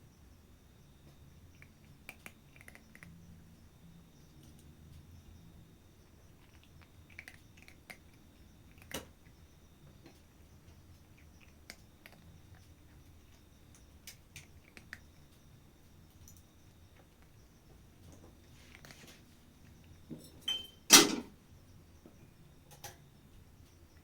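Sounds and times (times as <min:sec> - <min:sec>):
cat chewing crunchy food: 0:01.6 - 0:03.2, 0:06.3 - 0:17.4.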